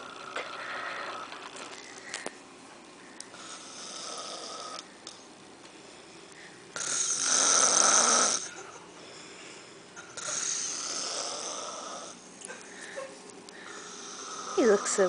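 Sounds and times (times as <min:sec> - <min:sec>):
man snoring: 0:03.3 - 0:04.8, 0:06.8 - 0:08.5, 0:10.2 - 0:12.2, 0:13.7 - 0:15.0.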